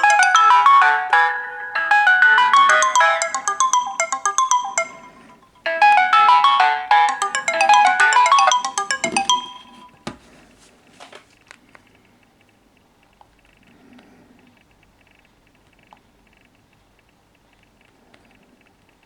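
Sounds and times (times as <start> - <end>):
phone alarm chime melodies: 0.0 - 10.0.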